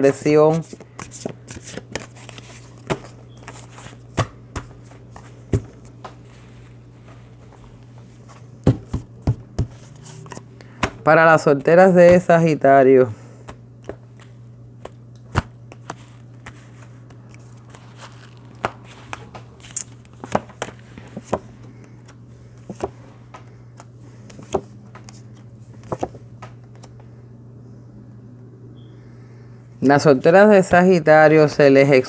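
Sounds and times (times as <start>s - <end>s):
low electrical hum: 0.0s - 32.0s
cards clicking and rustling: 0.5s - 12.5s, 13.4s - 27.1s.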